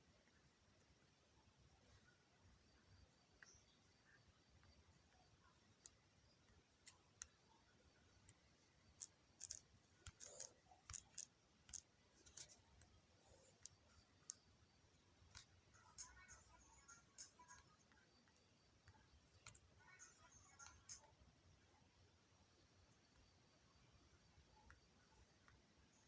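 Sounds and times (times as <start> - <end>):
fingers tapping a touchscreen: 3.3 - 21.2, 24.5 - 26.0.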